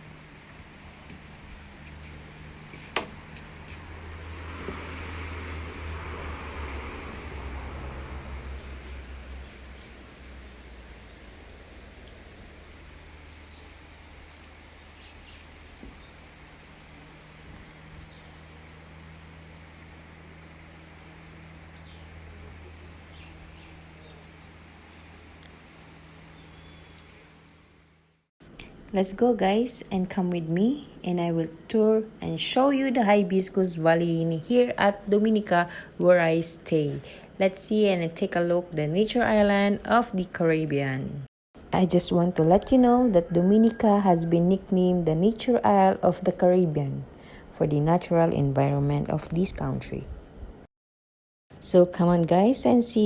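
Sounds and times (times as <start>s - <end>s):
vehicle passing: 0.0s - 14.8s, 15.5s - 27.6s
steady low hum: 0.0s - 50.7s.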